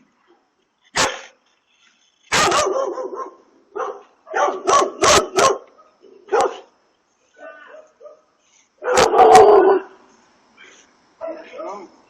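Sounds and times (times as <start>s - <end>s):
dog barking: 1.0s - 1.3s, 2.3s - 6.7s, 7.4s - 9.9s, 11.2s - 11.6s.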